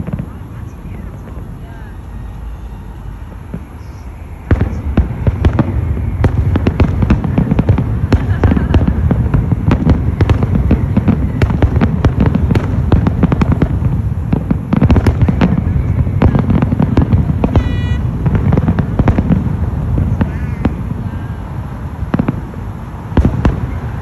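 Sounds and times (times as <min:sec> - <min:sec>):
whistle-like tone: 0:01.8 - 0:04.9, 0:17.5 - 0:18.0
rapid popping and crackling: 0:04.5 - 0:21.1.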